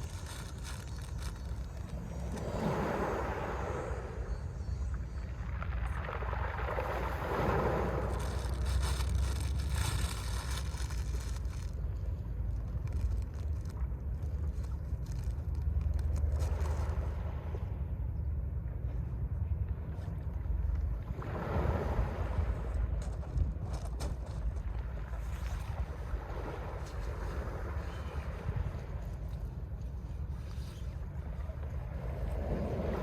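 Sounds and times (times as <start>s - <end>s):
sea waves washing onto shore: 0.0s - 4.5s, 5.4s - 17.4s
wind rumble on microphone: 0.0s - 33.0s.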